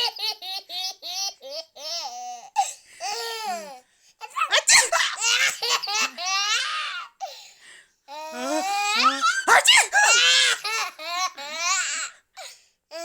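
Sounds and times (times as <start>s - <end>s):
baby giggling: 8.4s - 11.8s.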